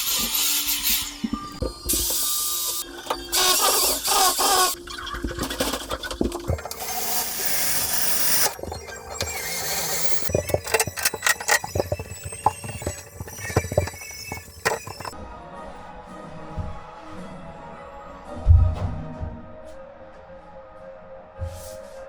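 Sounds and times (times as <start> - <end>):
power tool hissing and whirring: 0.0 - 4.8, 6.5 - 15.2.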